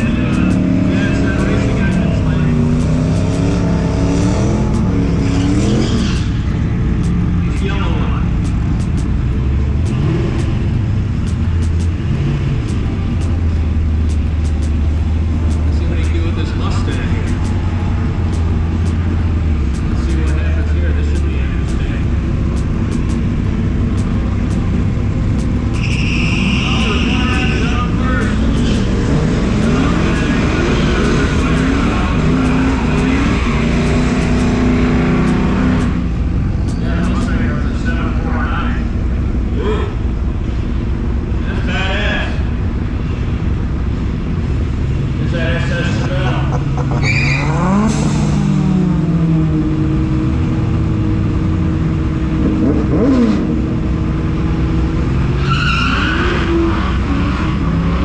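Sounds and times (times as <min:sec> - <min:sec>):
car engine revving: 0:00.0 - 0:58.0
road and tyre noise: 0:00.0 - 0:58.0.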